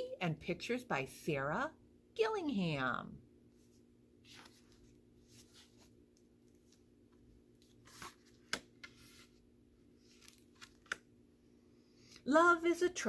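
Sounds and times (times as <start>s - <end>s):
low room hum: 0.0s - 13.0s
paper rustling: 3.6s - 6.9s, 7.5s - 9.4s, 10.0s - 11.0s.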